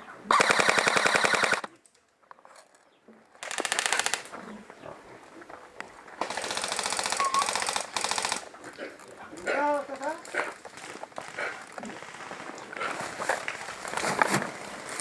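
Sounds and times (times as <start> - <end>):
airsoft rifle full auto bursts: 0.3 - 1.7, 3.4 - 4.3, 6.2 - 8.5.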